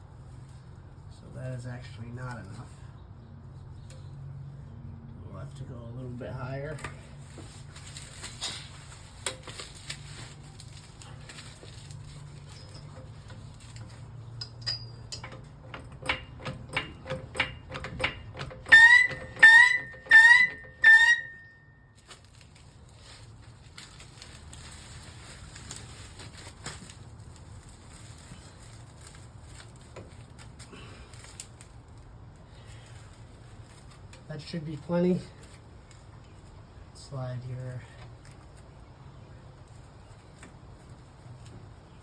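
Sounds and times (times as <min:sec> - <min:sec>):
floor jack squeaks: 0:18.6 - 0:21.5.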